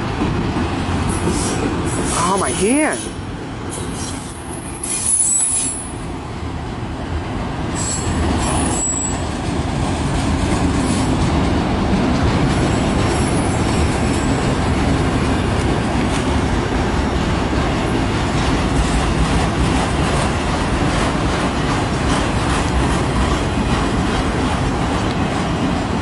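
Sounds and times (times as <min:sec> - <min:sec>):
freight train wheels rumbling: 0:00.0 - 0:26.0
high wheel squeals: 0:03.9 - 0:06.0, 0:07.8 - 0:09.2.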